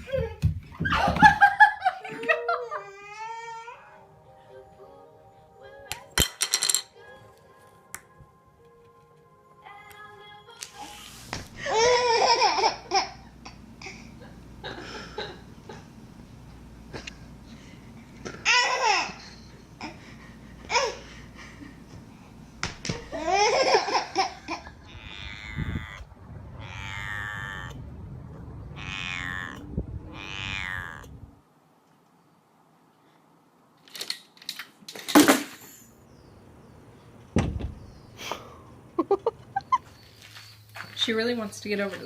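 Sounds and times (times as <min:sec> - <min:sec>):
baby giggling: 0:11.6 - 0:13.6, 0:23.1 - 0:25.0.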